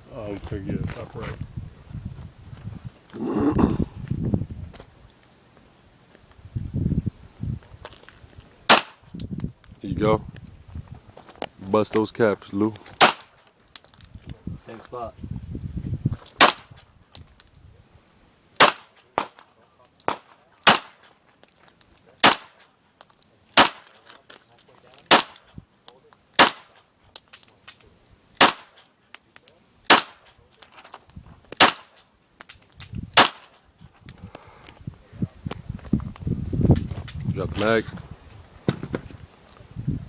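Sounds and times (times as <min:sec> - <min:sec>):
single gunshots: 0:08.7 - 0:09.0, 0:13.0 - 0:13.3, 0:16.4 - 0:16.7, 0:18.6 - 0:19.4, 0:20.1 - 0:21.0, 0:22.2 - 0:22.6, 0:23.6 - 0:23.9, 0:25.1 - 0:25.4, 0:26.4 - 0:26.7, 0:28.4 - 0:28.7, 0:29.9 - 0:30.2, 0:31.6 - 0:31.9, 0:33.2 - 0:33.5.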